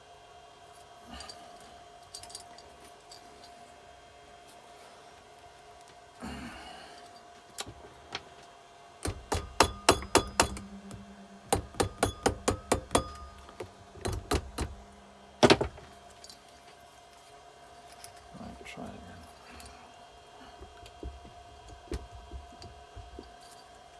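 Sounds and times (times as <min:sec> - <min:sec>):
sharp knocks on metal: 0:09.0 - 0:14.8.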